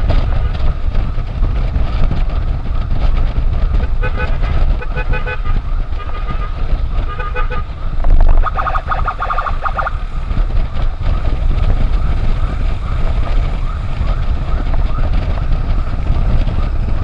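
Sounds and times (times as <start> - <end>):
motorcycle engine: 0.0 - 17.0
wind rumble: 0.0 - 17.0
rapid stuttering horn beeps: 3.8 - 7.7.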